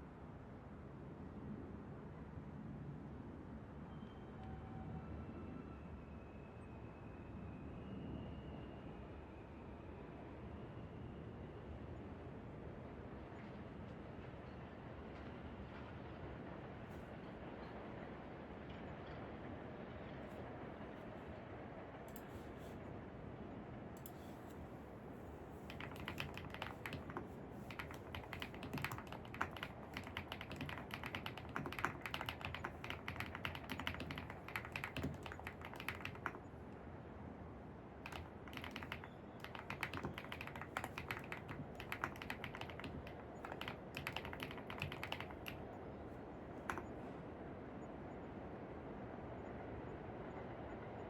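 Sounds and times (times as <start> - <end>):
low background noise: 17.1 - 51.0
computer keyboard typing: 25.6 - 36.6, 38.0 - 45.8, 46.6 - 47.0.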